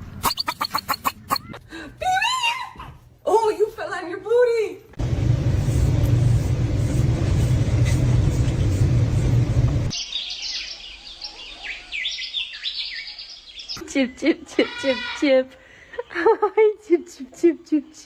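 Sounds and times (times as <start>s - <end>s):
prairie dog chirping calls: 0.2s - 1.6s
loud steady rumbling: 5.0s - 9.9s.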